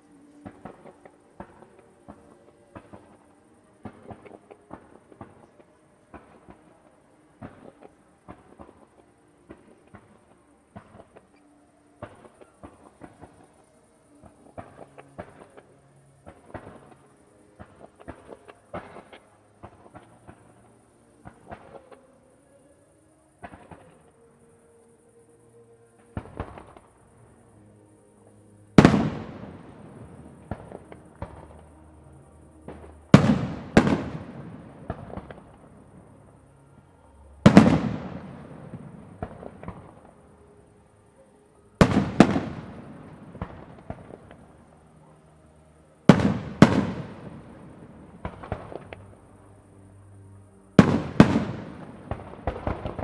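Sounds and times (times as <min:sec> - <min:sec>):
firework crackle: 0:00.0 - 0:22.0, 0:28.7 - 0:41.1, 0:41.7 - 0:45.0, 0:46.0 - 0:49.3, 0:50.8 - 0:53.0
small firework pops: 0:00.0 - 0:22.1, 0:23.4 - 0:24.2, 0:26.0 - 0:27.0, 0:28.8 - 0:31.8, 0:32.6 - 0:36.1, 0:37.4 - 0:40.2, 0:41.8 - 0:44.7, 0:46.0 - 0:49.1, 0:50.8 - 0:53.0
firework shells bursting: 0:28.8 - 0:31.4, 0:32.7 - 0:35.7, 0:37.4 - 0:40.0, 0:41.8 - 0:44.4, 0:46.1 - 0:48.9, 0:50.8 - 0:53.0.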